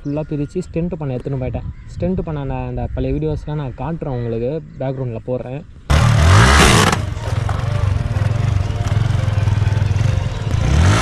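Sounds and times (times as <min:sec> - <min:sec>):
motorcycle engine revving and idling: 0:05.9 - 0:11.0.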